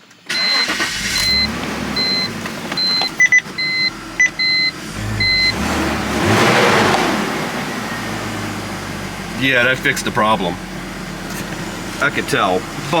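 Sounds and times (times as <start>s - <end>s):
car engine cranking and idling: 0.0s - 13.0s
dashboard warning chime beeping: 0.3s - 8.6s.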